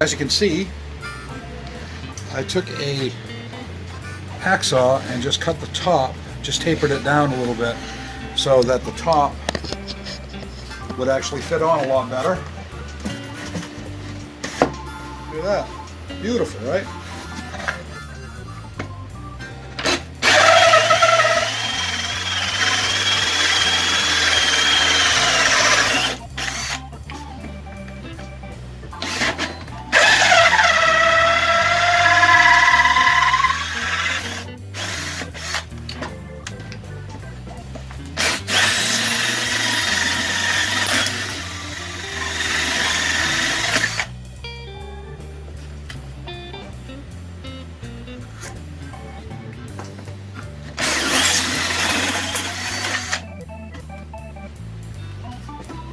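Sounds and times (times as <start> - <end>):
power drill whining: 0.0 - 27.2, 28.9 - 36.1, 38.0 - 44.2, 50.6 - 53.4
background music: 0.0 - 55.9.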